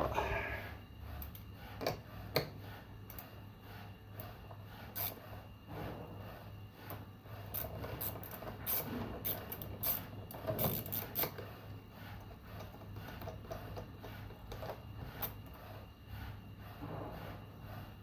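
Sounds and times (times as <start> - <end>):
steady low hum: 0.0 - 18.0.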